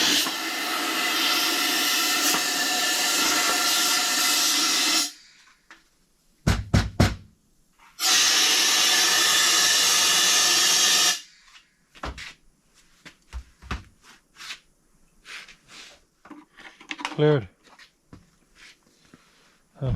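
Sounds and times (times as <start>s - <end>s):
compressed air blowgun hissing: 0.0s - 5.4s, 8.0s - 11.4s.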